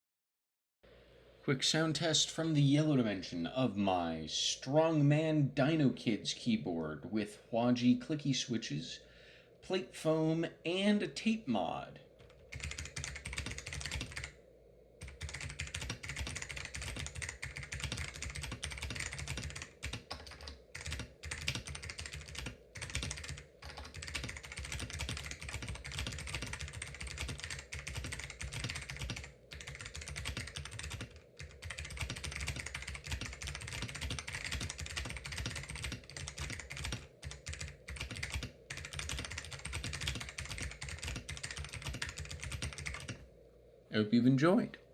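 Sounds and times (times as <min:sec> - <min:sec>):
clicky mechanical keyboard typing: 0:12.2 - 0:14.3, 0:15.0 - 0:43.2.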